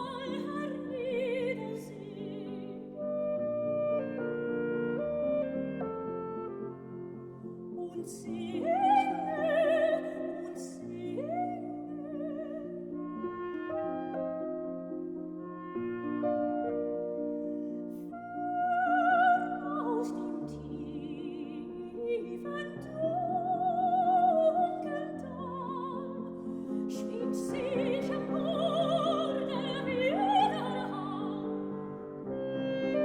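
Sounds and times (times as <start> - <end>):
operatic soprano singing: 0.0 - 3.2, 7.4 - 13.7, 17.9 - 33.0
piano accompaniment: 0.0 - 33.0.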